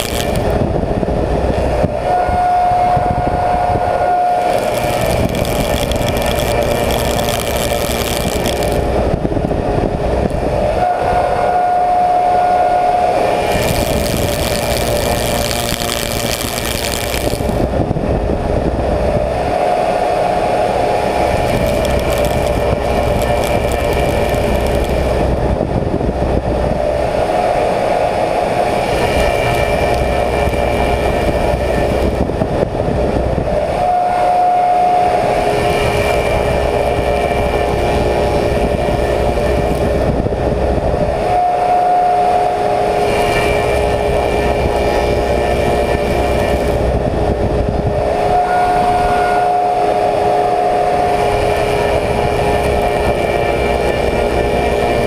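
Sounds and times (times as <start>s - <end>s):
planing machine cutting wood: 0.0s - 0.5s, 4.3s - 9.0s, 13.2s - 17.7s, 21.0s - 25.3s.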